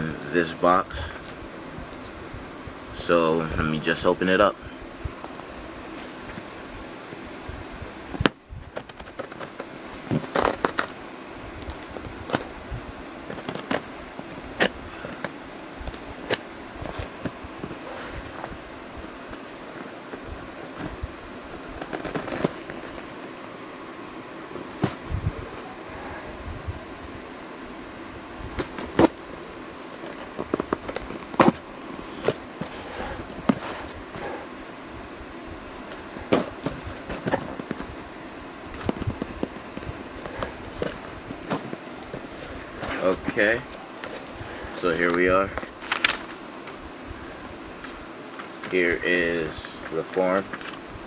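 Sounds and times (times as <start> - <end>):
box being unpacked by hand: 8.7 - 11.0, 13.2 - 23.4, 24.6 - 26.2, 28.5 - 34.5, 36.0 - 38.0, 38.7 - 46.4
packing paper crinkling: 38.8 - 46.4.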